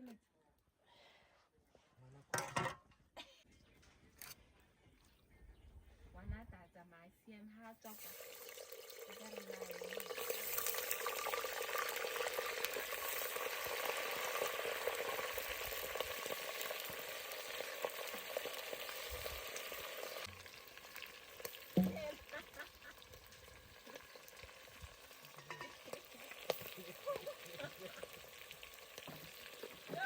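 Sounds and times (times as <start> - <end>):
fat sizzling in a pot: 7.8 - 30.0.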